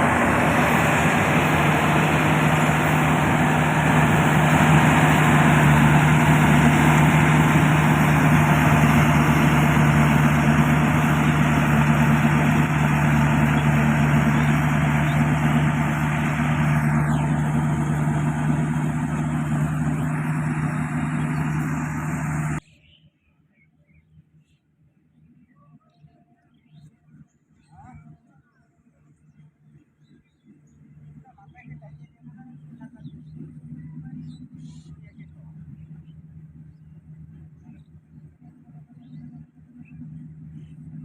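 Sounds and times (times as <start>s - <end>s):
combine harvester engine hum: 0.0s - 22.6s, 32.2s - 41.0s.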